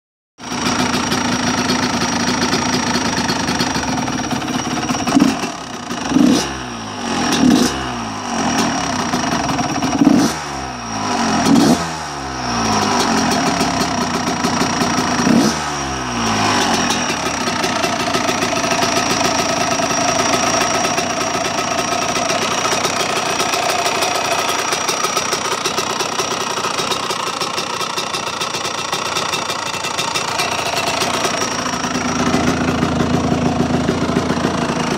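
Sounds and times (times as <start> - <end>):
engine idling: 0.4 - 34.9
engine revving: 5.0 - 25.4.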